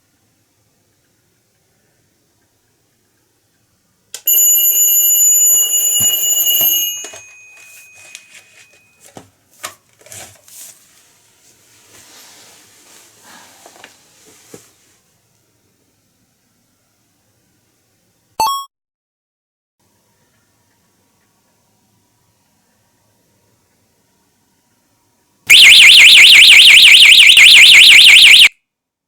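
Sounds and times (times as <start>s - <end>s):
alarm ringing: 4.3s - 8.4s, 25.5s - 28.5s
knocks and rustling of handling: 7.0s - 14.9s.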